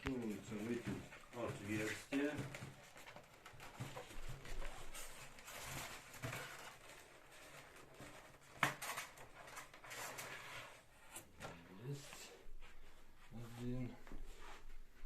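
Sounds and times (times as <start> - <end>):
plastic parts rustling and knocking: 0.0 - 11.7.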